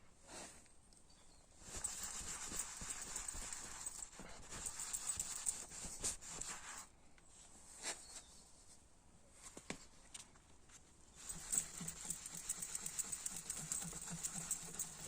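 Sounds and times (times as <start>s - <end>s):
cloth scrubbing wood: 11.2s - 15.0s.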